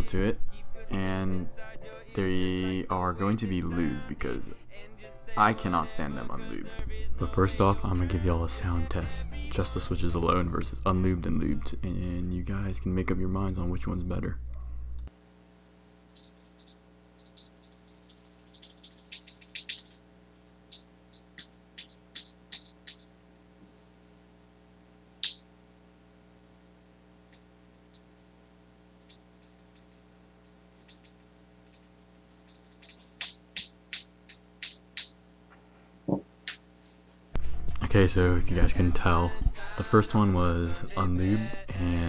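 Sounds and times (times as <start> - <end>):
metallic spring ping: 25.2 - 25.5.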